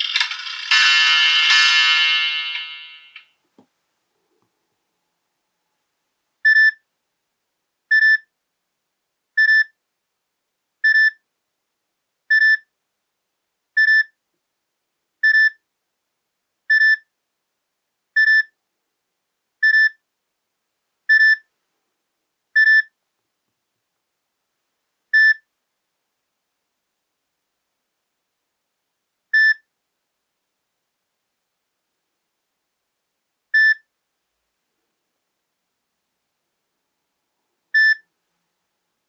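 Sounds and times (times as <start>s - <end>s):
high electronic ringtone beep: 0.0s - 3.2s.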